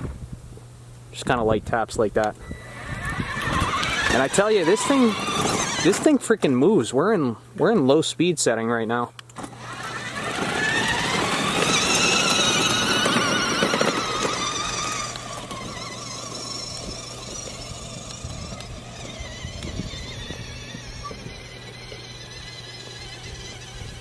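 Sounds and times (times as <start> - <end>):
toy truck electric motors whining: 2.4 - 6.1, 9.4 - 24.0.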